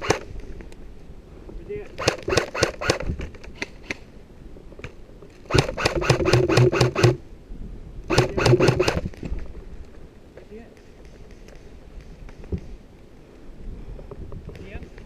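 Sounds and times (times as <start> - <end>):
airsoft gun rapid shots: 2.0 - 3.0, 5.5 - 7.2, 8.1 - 9.1
gun motor humming: 5.5 - 7.2, 8.1 - 9.1.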